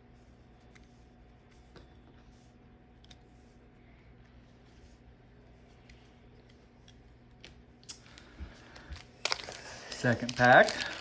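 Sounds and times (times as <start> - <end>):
low steady hum: 0.0 - 11.0
trading cards clicking: 9.0 - 11.0.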